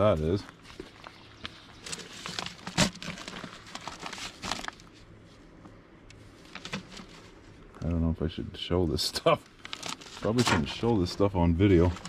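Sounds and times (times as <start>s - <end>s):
papers rustling: 0.0s - 5.4s, 6.4s - 8.0s, 9.4s - 12.0s.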